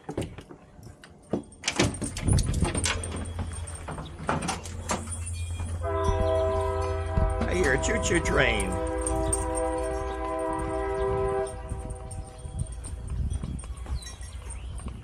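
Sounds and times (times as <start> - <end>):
train horn chord: 5.8 - 12.5.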